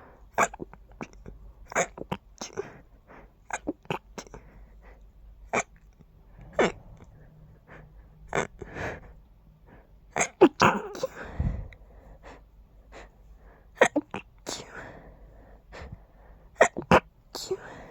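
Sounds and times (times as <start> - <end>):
person stifling sneezes: 0.3 - 2.8, 5.5 - 7.1, 10.1 - 11.2, 13.8 - 14.9, 16.6 - 17.9.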